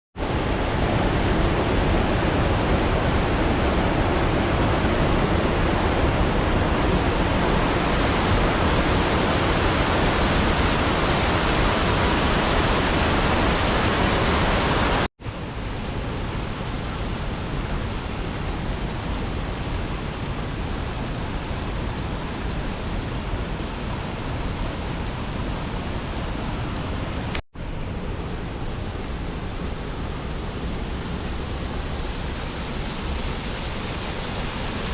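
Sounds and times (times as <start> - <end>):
spring water rushing: 0.3 - 15.1, 30.0 - 34.9.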